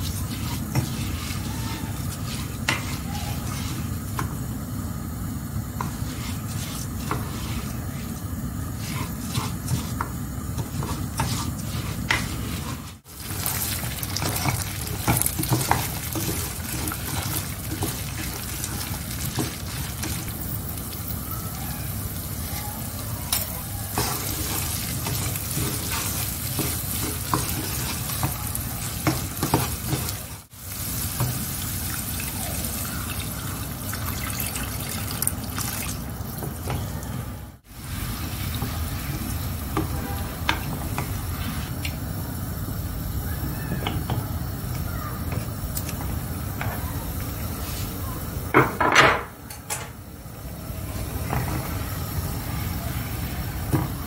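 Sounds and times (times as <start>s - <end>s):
utensil scraping a pan: 0.0s - 3.9s, 8.8s - 13.6s
food sizzling in a frying pan: 0.0s - 36.8s, 37.6s - 49.4s.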